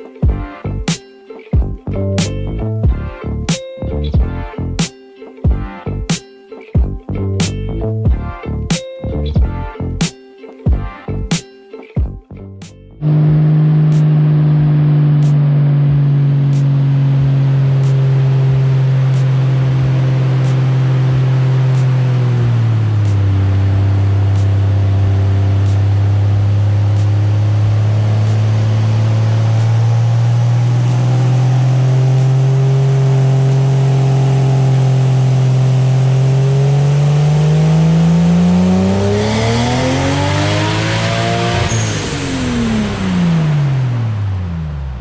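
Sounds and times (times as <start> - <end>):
car engine revving: 13.0 - 45.0.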